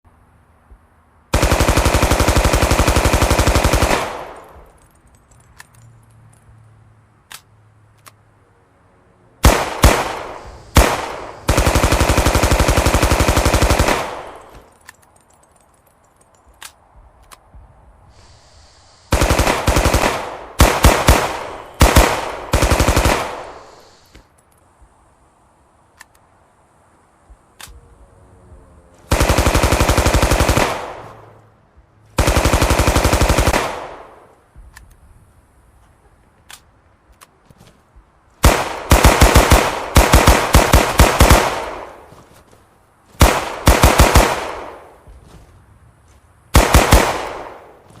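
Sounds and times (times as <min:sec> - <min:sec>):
submachine gun automatic fire: 0:01.3 - 0:04.5, 0:09.4 - 0:14.5, 0:19.1 - 0:23.8, 0:29.1 - 0:31.1, 0:32.2 - 0:34.1, 0:38.4 - 0:41.9, 0:43.2 - 0:44.7, 0:46.5 - 0:47.7.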